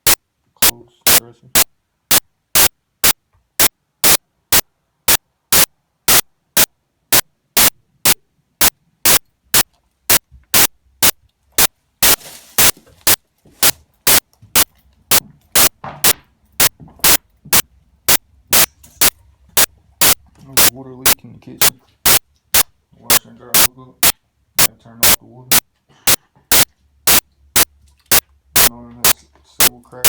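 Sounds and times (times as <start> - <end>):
loud sharp clicks: 1.1 - 13.2, 14.1 - 20.7, 21.6 - 22.7, 25.0 - 28.7
short burst of hiss: 12.0 - 14.7.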